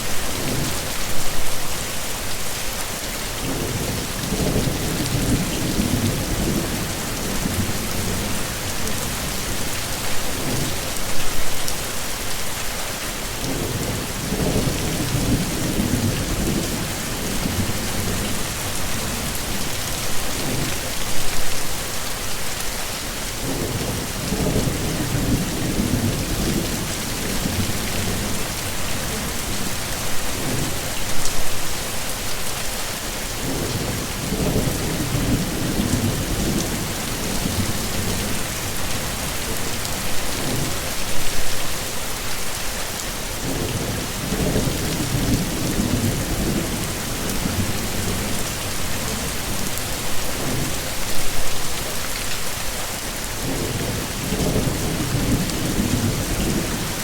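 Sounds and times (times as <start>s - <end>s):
heavy rain hissing: 0.0s - 57.0s.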